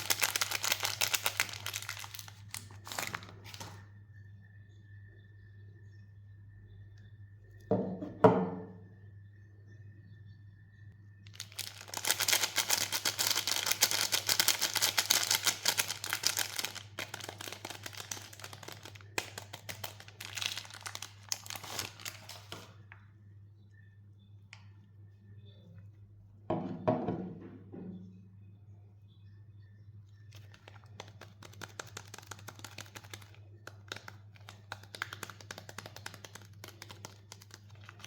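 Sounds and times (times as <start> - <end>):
wrapper crinkling and tearing: 0.0 - 3.8, 11.3 - 22.7, 30.4 - 38.0.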